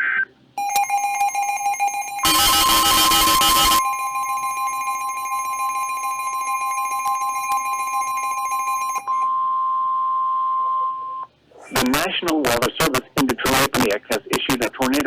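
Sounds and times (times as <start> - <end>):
two-tone electronic alarm: 0.6 - 9.6.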